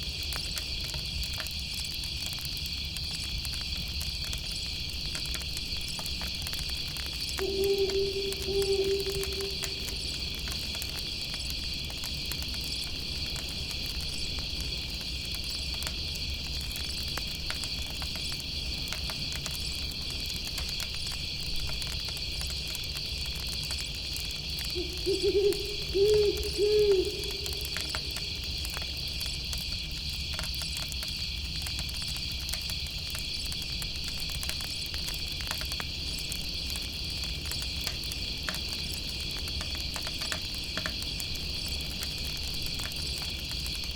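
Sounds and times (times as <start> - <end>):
campfire crackling: 0.0 - 43.9
crickets chirring: 0.0 - 43.9
owl hooting: 7.4 - 10.4, 24.7 - 28.9.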